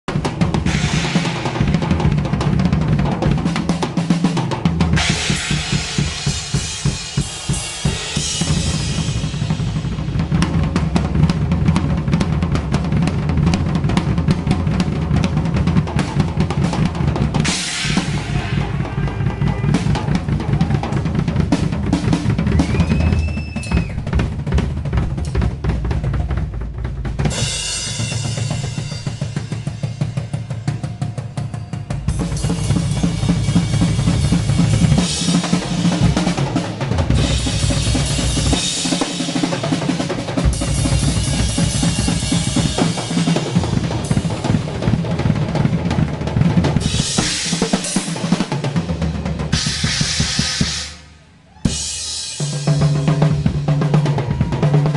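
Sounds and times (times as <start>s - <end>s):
drum kit solo: 0.0s - 54.9s
cymbals crashing: 5.0s - 10.0s, 17.4s - 19.9s, 49.5s - 51.2s.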